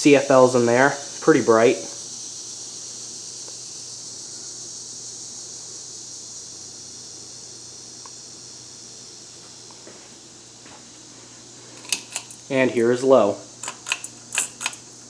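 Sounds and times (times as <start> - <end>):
high hiss: 0.0 - 10.4
faint electrical hum: 0.0 - 15.0.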